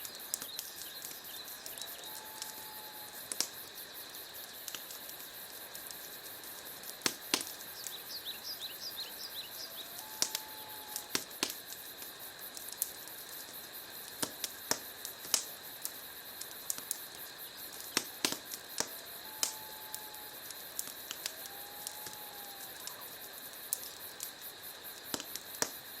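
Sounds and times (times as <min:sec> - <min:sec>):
fire hiss: 0:00.0 - 0:26.0
wood fire crackling: 0:00.0 - 0:26.0.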